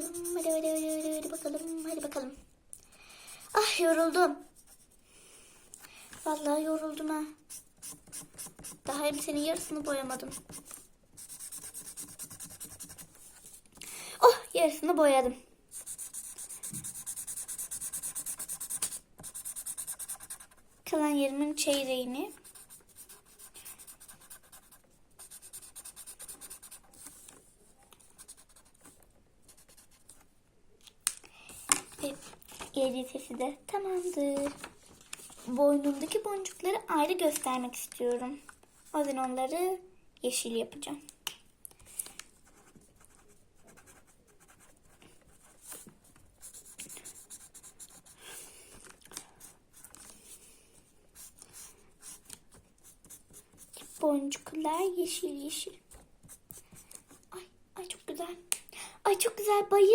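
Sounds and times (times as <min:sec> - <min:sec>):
colouring strokes on paper: 0:00.0 - 0:02.4, 0:07.3 - 0:13.6, 0:15.7 - 0:20.9, 0:22.3 - 0:27.4, 0:42.4 - 0:48.4.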